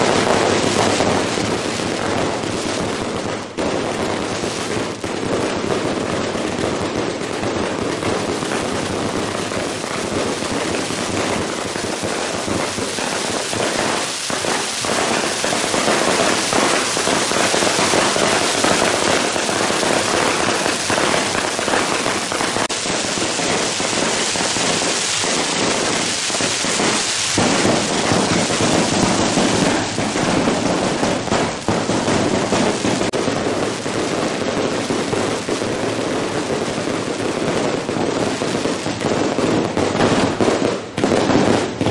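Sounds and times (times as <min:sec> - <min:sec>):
firecrackers crackling: 0:00.0 - 0:41.9.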